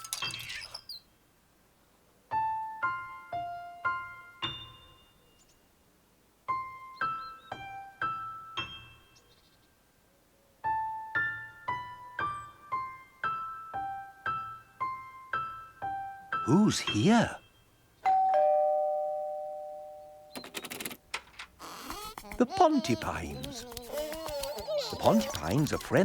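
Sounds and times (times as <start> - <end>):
gentle piano-like keyboard melody: 2.3 - 5.8, 6.4 - 20.4.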